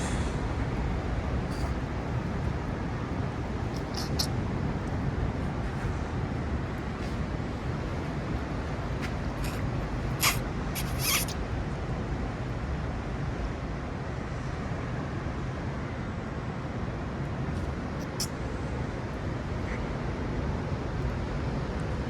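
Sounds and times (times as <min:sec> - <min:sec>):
sharp scraping clicks: 0:03.6 - 0:04.3, 0:09.0 - 0:11.4.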